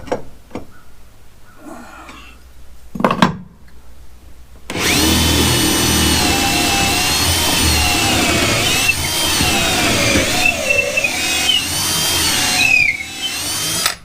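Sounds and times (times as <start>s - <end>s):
power drill boring into wood: 4.7s - 14.0s.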